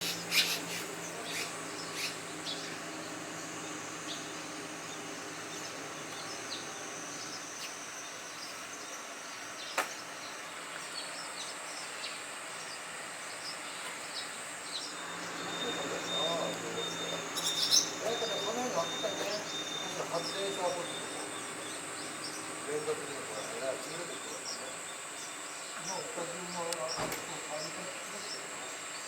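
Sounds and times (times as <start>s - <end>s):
high insect drone: 0.0s - 29.0s
rushing outdoor background: 14.5s - 29.0s.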